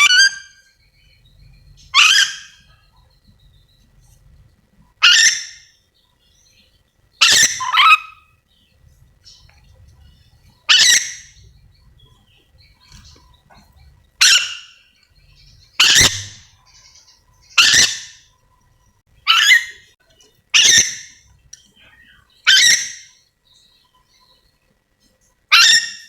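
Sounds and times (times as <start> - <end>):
parrot screeching calls: 0.0 - 0.6, 1.9 - 2.7, 5.0 - 5.7, 7.2 - 8.2, 10.7 - 11.3, 14.2 - 14.8, 15.8 - 16.4, 17.6 - 18.2, 19.3 - 19.7, 20.5 - 21.1, 22.5 - 23.1, 25.5 - 26.0.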